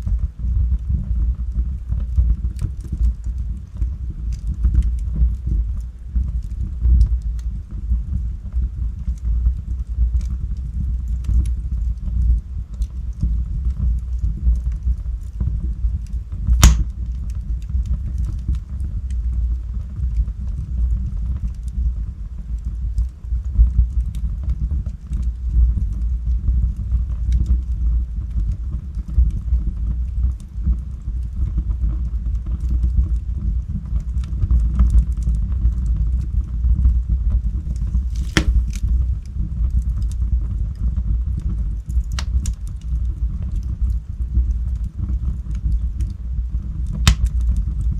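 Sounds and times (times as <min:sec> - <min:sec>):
fire burning with crackles: 0:00.0 - 0:47.9
loud wood pop: 0:16.6 - 0:16.9, 0:38.1 - 0:38.8, 0:47.1 - 0:47.3.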